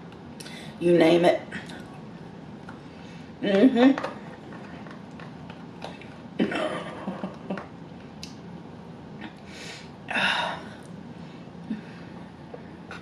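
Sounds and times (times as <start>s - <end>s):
noisy breath: 9.4s - 12.3s.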